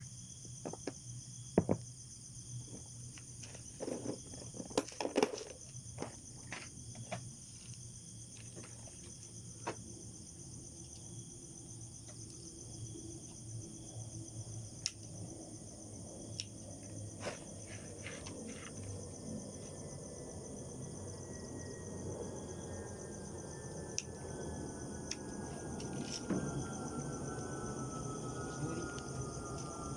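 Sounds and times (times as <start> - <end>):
insects trilling: 0.0 - 29.9
sharp knocks and clicks: 1.6 - 1.9.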